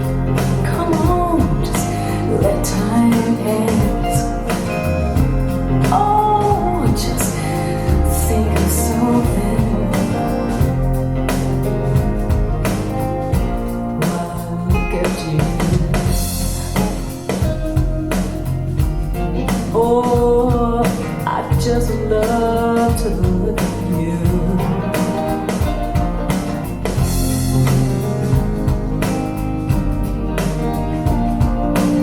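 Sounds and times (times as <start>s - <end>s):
person singing: 0.0s - 10.6s, 14.0s - 17.0s, 19.3s - 25.8s
drums: 0.0s - 32.0s
guitar: 0.0s - 32.0s.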